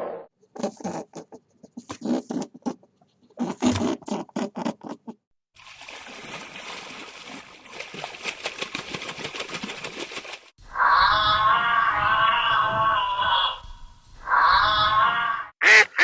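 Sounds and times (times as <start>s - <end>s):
water splashing and trickling: 5.5s - 10.6s.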